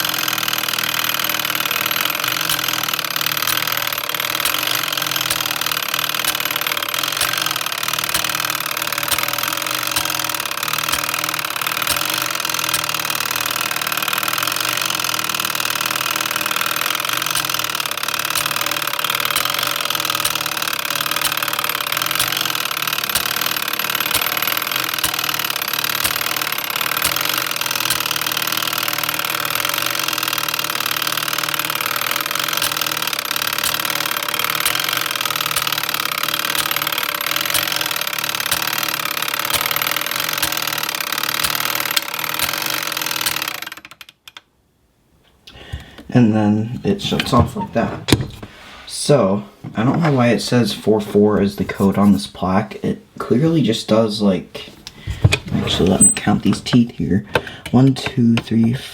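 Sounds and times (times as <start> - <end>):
faint mechanism clicks: 1.6 - 15.3, 16.3 - 29.0, 31.7 - 44.5
mechanical whir: 2.2 - 13.6.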